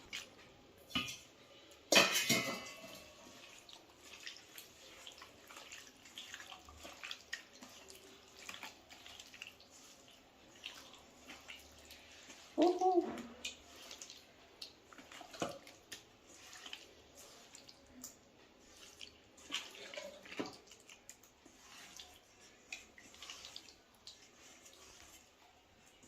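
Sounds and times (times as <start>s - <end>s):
wet squelching of marinade: 0.0s - 26.0s
clinks and scrapes on metal vessel: 1.9s - 3.1s.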